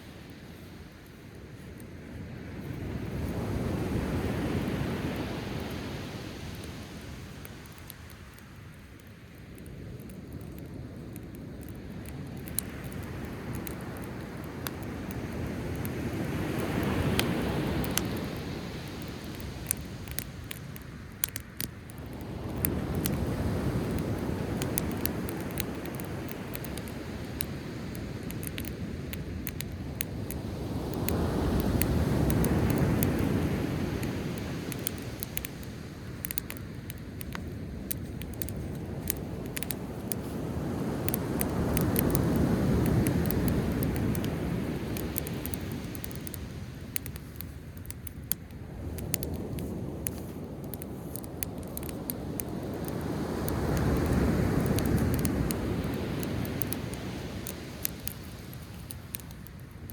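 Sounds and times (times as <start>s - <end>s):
campfire crackling and popping: 0.0s - 59.9s
sea waves breaking on shore: 12.1s - 47.4s, 48.8s - 59.3s.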